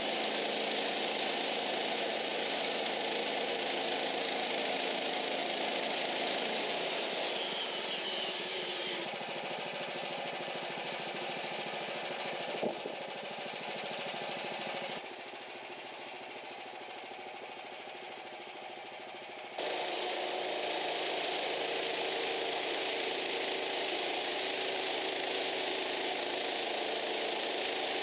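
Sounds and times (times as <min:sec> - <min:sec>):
machine running: 0:00.0 - 0:09.2, 0:19.6 - 0:28.0.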